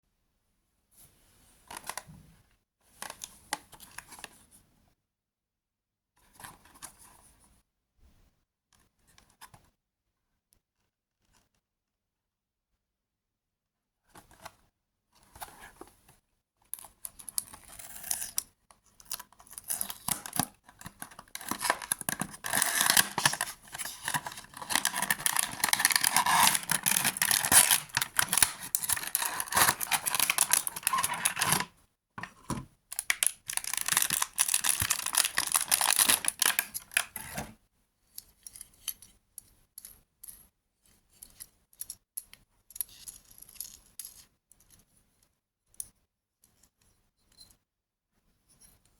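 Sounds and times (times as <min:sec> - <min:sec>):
packaging tearing and crinkling: 0:19.6 - 0:31.7, 0:32.9 - 0:37.5.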